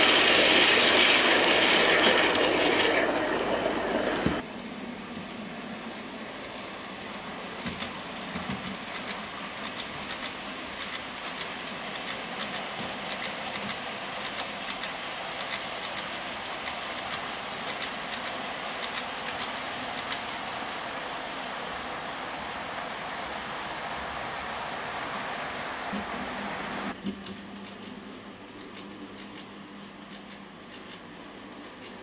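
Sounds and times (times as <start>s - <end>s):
wheels clicking over rail joints: 0.0s - 4.5s, 5.3s - 26.2s
model train running: 0.0s - 32.0s.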